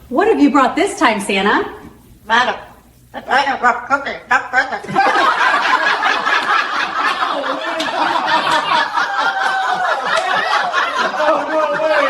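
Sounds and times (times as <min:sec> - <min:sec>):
people laughing: 0:04.6 - 0:12.0.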